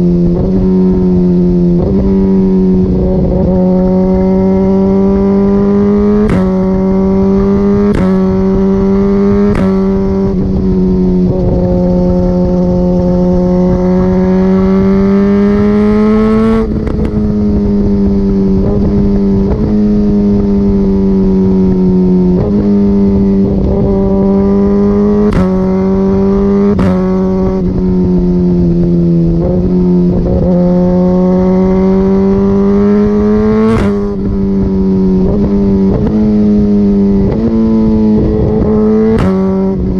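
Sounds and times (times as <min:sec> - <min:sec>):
motorcycle engine at high revs: 0:00.0 - 0:39.9
sharp exhaust pops: 0:06.2 - 0:06.6, 0:07.8 - 0:08.4, 0:09.4 - 0:10.0, 0:25.2 - 0:25.7, 0:39.1 - 0:39.6.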